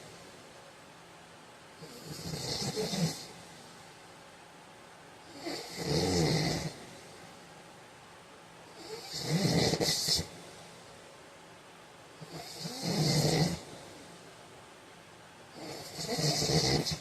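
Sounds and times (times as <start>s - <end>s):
man snoring: 1.8s - 3.4s, 5.3s - 6.9s, 8.8s - 10.3s, 12.2s - 13.7s, 15.6s - 17.0s.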